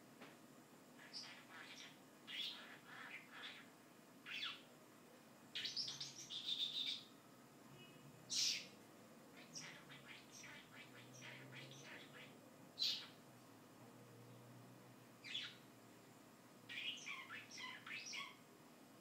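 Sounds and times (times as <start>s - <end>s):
bird chattering: 1.0s - 3.7s, 4.3s - 4.6s, 5.6s - 7.1s, 9.4s - 13.2s, 16.7s - 18.4s
bird chirping: 1.0s - 4.7s, 5.5s - 7.2s, 7.8s - 13.2s, 15.2s - 15.7s, 16.7s - 18.5s.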